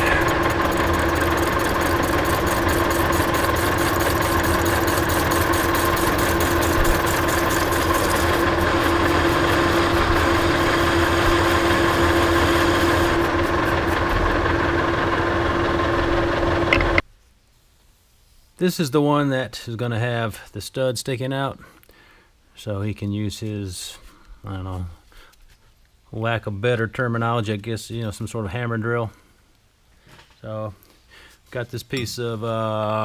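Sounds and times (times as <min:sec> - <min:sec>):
lathe humming: 0:00.0 - 0:17.0
tool cutting steel rattle: 0:00.0 - 0:17.0.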